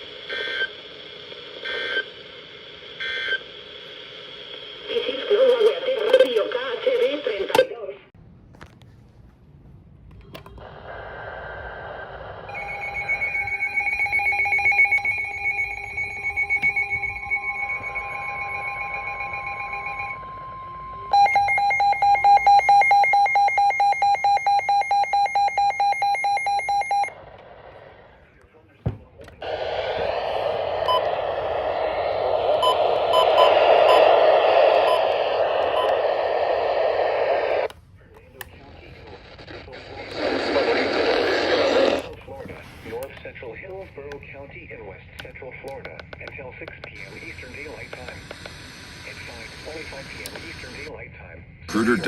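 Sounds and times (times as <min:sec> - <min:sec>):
radio static hiss: 0:00.0 - 0:08.1, 0:10.6 - 0:13.5, 0:27.1 - 0:51.1, 0:51.7 - 0:52.0.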